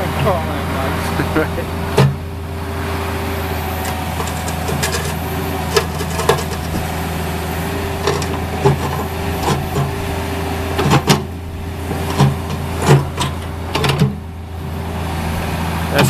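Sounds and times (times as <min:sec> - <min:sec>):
diesel engine running: 0:00.0 - 0:16.0
steady whine: 0:00.0 - 0:16.0
machine clanks and knocks: 0:01.9 - 0:02.2, 0:03.8 - 0:07.1, 0:07.8 - 0:10.2, 0:10.8 - 0:14.2.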